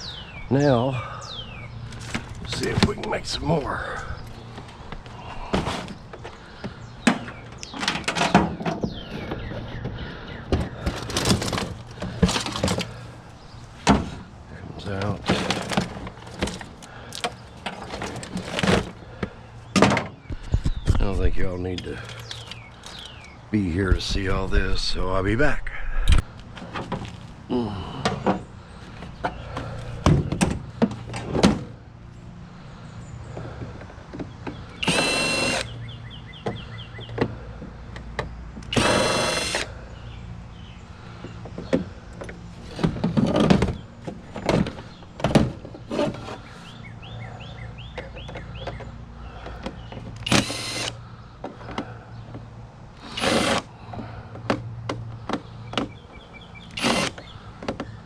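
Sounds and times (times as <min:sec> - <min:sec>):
power drill bursts: 0:34.8 - 0:35.7, 0:38.7 - 0:39.7, 0:50.2 - 0:51.0, 0:53.0 - 0:53.7, 0:56.7 - 0:57.3.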